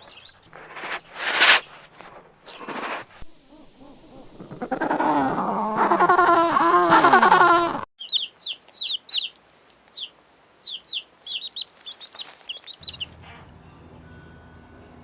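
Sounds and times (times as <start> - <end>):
chicks peeping: 8.0 - 15.0
faint low hum: 11.9 - 15.0.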